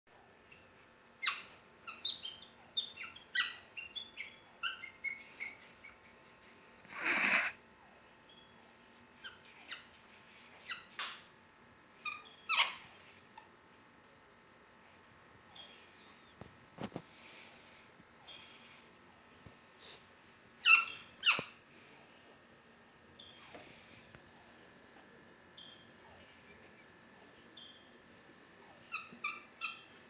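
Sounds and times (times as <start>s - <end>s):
high insect drone: 0.1s - 30.0s
bird chirping: 1.2s - 6.2s
short breathy burst: 6.8s - 7.6s.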